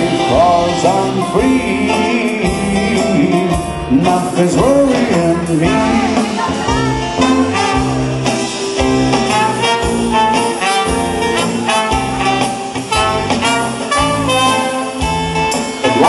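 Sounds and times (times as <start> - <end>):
bass line: 0.0 - 16.0
horns playing a tune: 4.0 - 16.0.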